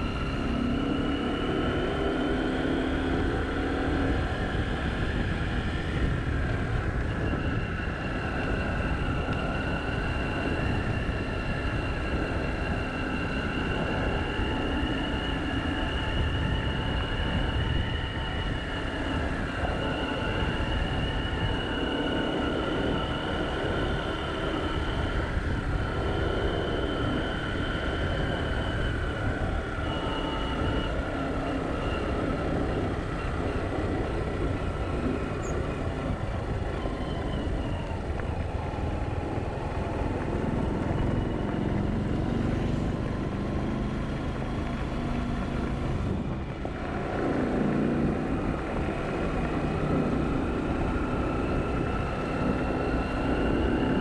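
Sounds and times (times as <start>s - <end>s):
high wavering whine: 0.0s - 43.3s
vehicle engine rumbling: 0.0s - 54.0s.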